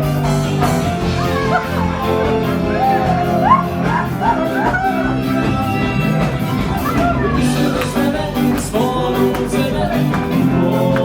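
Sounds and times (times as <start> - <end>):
drums: 0.0 - 11.0
live band music: 0.0 - 11.0
sliding bending melody line: 1.1 - 8.5.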